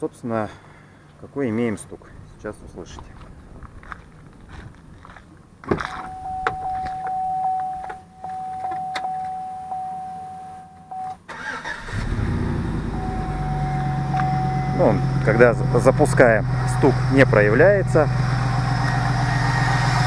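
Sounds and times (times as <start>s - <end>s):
car engine cranking and idling: 1.9s - 9.4s, 11.2s - 20.0s
dashboard warning chime: 6.0s - 11.2s, 12.8s - 15.5s.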